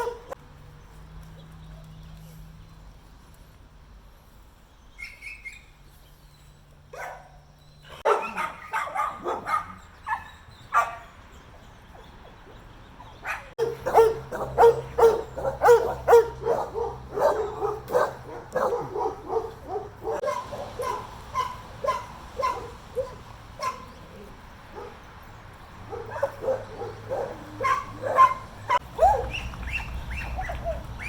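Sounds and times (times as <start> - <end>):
dogs barking: 0.0 - 0.4, 6.9 - 11.2, 11.9 - 25.1, 25.8 - 31.0.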